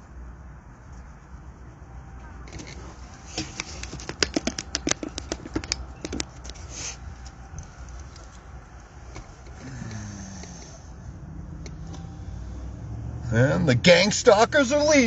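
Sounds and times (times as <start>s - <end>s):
low steady rumble: 0.0s - 15.0s
sharp clicks and taps: 3.4s - 6.6s.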